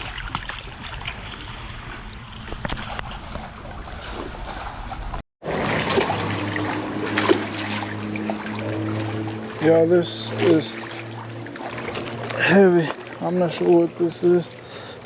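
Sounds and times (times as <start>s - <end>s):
river water trickling: 0.0s - 4.9s, 5.5s - 15.0s
steady low hum: 6.0s - 15.0s.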